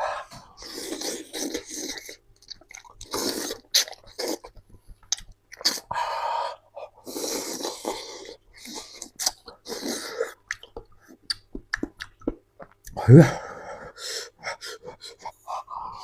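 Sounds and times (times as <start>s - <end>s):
chewing and slurping food: 0.6s - 5.9s.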